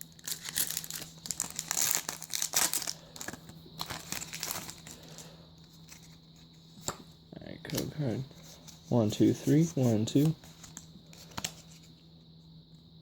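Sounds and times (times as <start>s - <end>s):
plastic wrapper crinkling and tearing: 0.0s - 5.2s.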